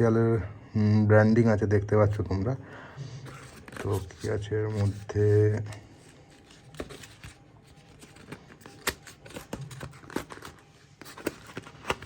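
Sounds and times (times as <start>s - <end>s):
faint packaging rustling: 3.0s - 12.0s.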